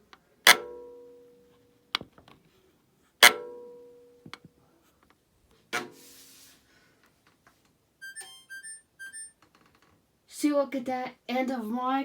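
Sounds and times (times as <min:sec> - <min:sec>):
bell-like alert chime: 0:08.0 - 0:09.3.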